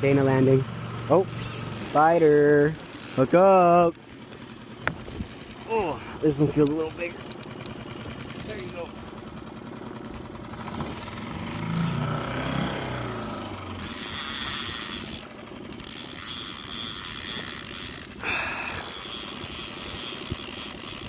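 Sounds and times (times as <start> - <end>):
fishing reel ratcheting: 1.2 - 5.6, 6.2 - 9.0, 11.3 - 12.2, 13.7 - 21.0.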